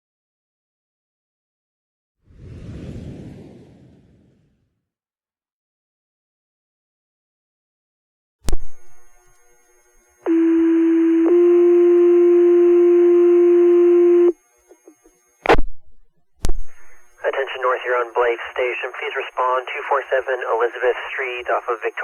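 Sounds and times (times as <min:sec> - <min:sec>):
radio clicks: 0:15.5 - 0:16.7.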